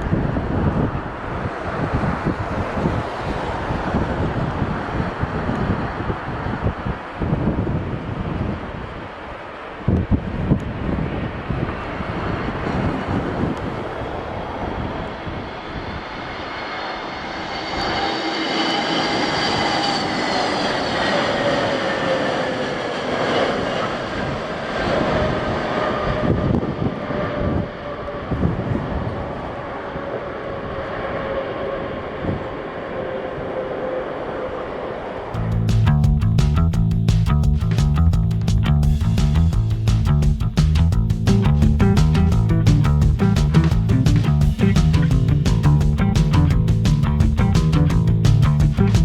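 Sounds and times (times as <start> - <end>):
jet engines roaring past: 0.0 - 35.5
wind buffeting microphone: 0.0 - 49.0.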